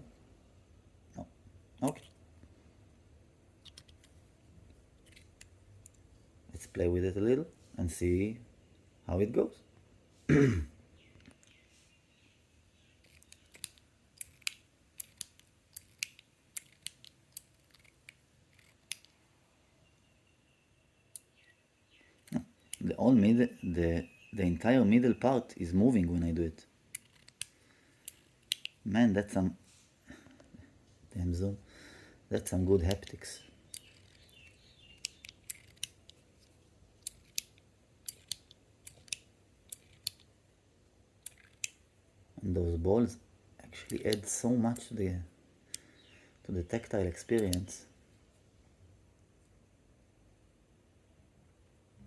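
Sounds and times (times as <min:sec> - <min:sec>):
metal fidget toy clicking: 0:13.0 - 0:19.2, 0:26.9 - 0:28.8, 0:33.7 - 0:36.2, 0:37.0 - 0:40.2, 0:41.2 - 0:41.8.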